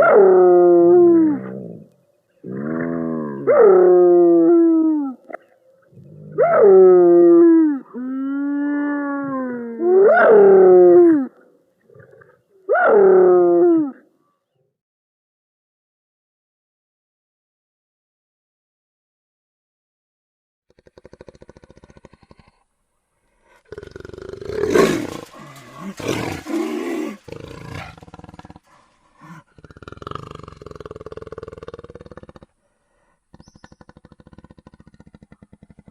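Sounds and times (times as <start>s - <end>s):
large animal roaring: 0.2s - 5.0s, 23.7s - 32.5s.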